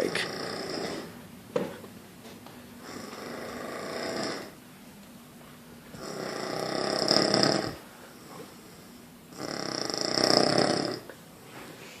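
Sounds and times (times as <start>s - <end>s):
person snoring: 0.0s - 1.1s, 2.8s - 4.6s, 6.0s - 11.1s.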